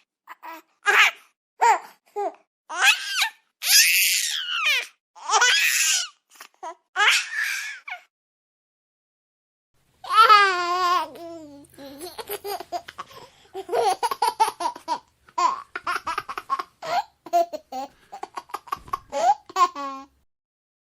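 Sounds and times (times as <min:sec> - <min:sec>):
baby laughing: 0:10.0 - 0:20.1.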